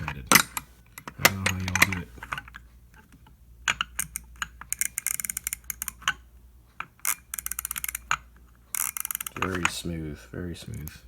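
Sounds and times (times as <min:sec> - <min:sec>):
tool handling clicks: 0:00.0 - 0:06.2, 0:06.8 - 0:09.8
ratchet clicking: 0:03.6 - 0:09.8.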